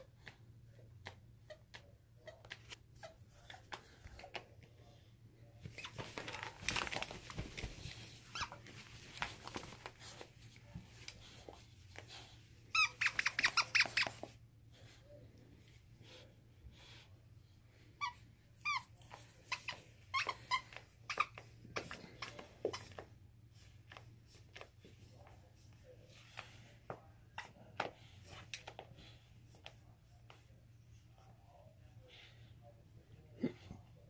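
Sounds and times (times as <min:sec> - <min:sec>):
rustling noise: 0:05.6 - 0:12.1
squeaky dog toy squeaks: 0:12.7 - 0:14.3.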